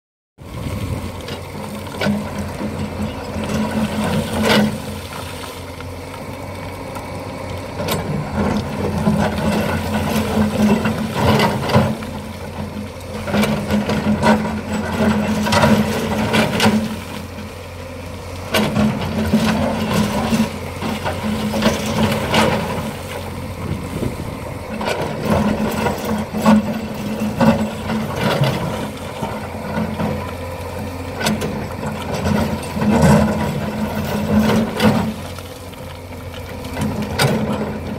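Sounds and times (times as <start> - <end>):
bucket scraping and clunking in sand: 0.4 - 5.9, 7.8 - 37.9
excavator diesel engine running: 0.4 - 37.9.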